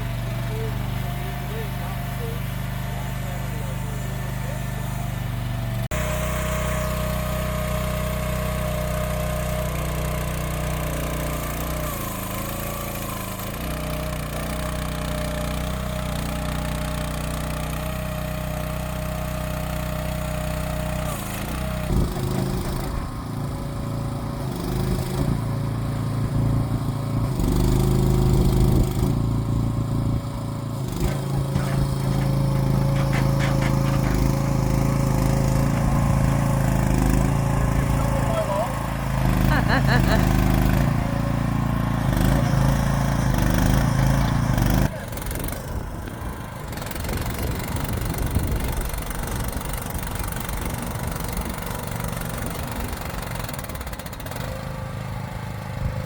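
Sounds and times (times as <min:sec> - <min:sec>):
small diesel engine running: 0:00.0 - 0:56.0
rattling and clatter: 0:30.9 - 0:38.3.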